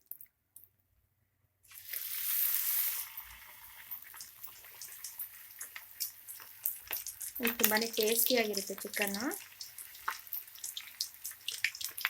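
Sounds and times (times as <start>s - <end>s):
chicken sizzling in hot oil: 1.7s - 12.0s.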